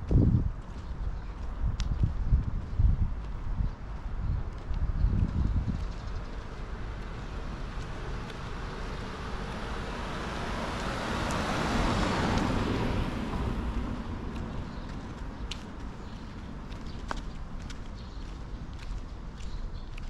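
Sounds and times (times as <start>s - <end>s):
car passing by: 6.4s - 15.6s.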